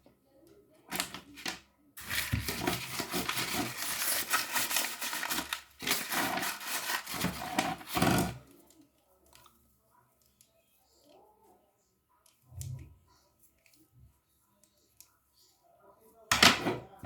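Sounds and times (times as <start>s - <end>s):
packaging crinkling and rustling: 0.9s - 8.8s.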